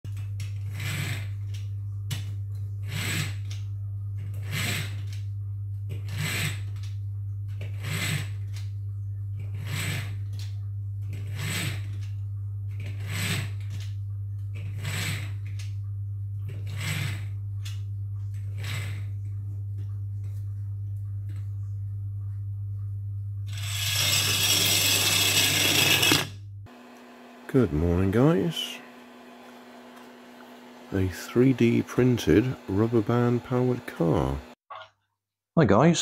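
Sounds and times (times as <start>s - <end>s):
steady low hum: 17.2s - 25.0s, 26.3s - 34.6s.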